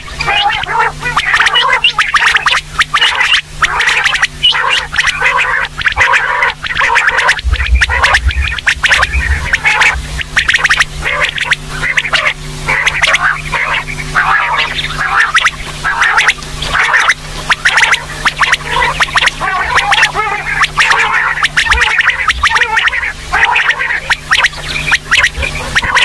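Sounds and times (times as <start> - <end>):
quail calling: 0.0 - 26.0
steady low hum: 0.0 - 26.0
low rumble: 5.8 - 11.8.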